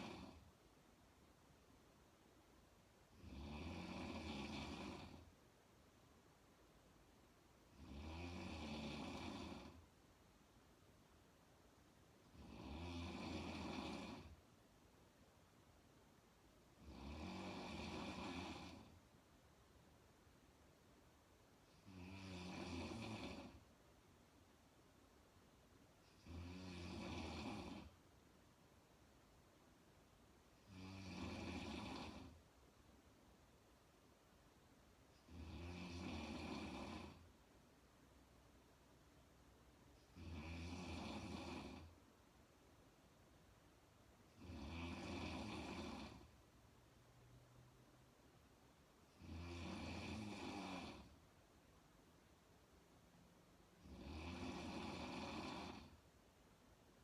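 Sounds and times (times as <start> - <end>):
woman snoring: 0.0 - 0.5, 3.1 - 5.3, 7.7 - 9.8, 12.3 - 14.4, 16.8 - 19.0, 21.7 - 23.6, 26.1 - 28.0, 30.6 - 32.4, 35.2 - 37.3, 40.0 - 42.0, 44.4 - 46.4, 49.1 - 51.2, 53.8 - 56.0.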